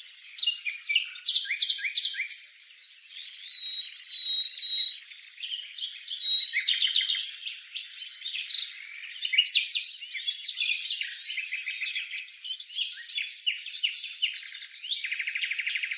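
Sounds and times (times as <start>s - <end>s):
bird singing: 0.0s - 15.9s.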